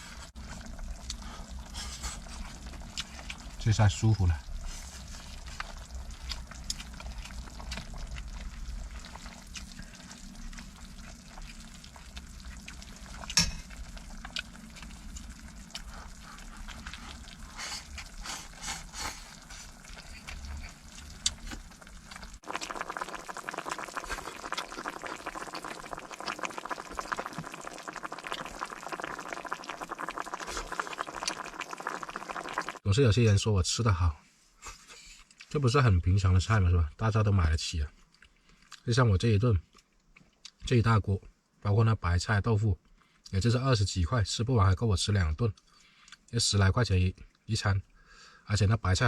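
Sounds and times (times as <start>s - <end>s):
dense steady hiss: 0.0s - 7.8s
stew simmering and bubbling: 0.0s - 33.2s.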